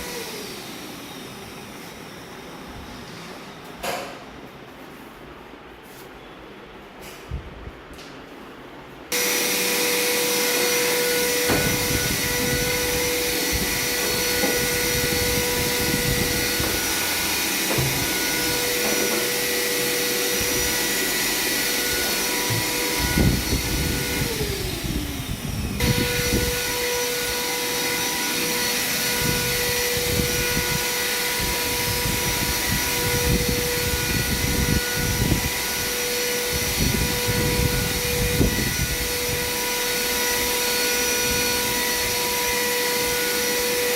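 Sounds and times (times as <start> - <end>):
power tool motor whining: 9.1 - 43.9
rough noise from the work: 9.1 - 43.9.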